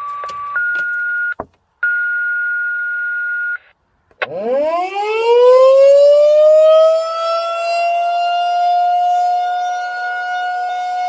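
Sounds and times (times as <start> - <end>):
siren winding up to a wail: 4.2 - 11.0.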